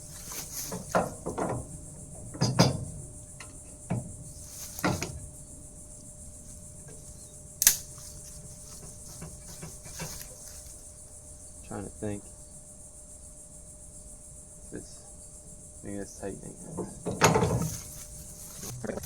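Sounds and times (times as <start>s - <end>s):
metal tools knocking: 0.0s - 5.4s, 8.0s - 10.8s, 16.2s - 19.0s
crickets chirring: 0.0s - 19.0s.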